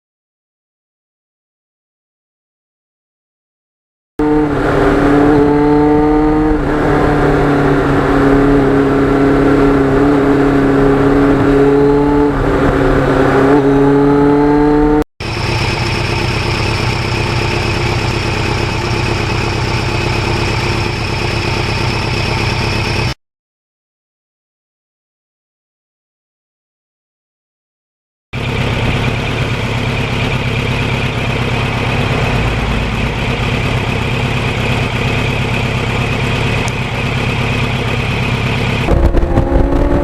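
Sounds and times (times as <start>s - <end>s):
motorcycle engine revving: 4.2s - 23.2s, 28.4s - 40.0s
high whine: 28.8s - 36.3s, 38.9s - 40.0s.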